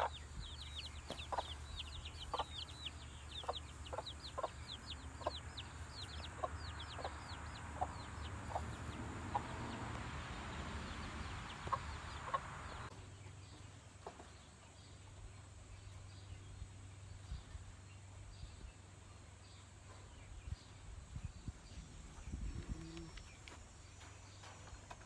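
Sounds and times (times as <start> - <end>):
chickens clucking: 0.0 - 12.9
chicks peeping: 0.0 - 14.8.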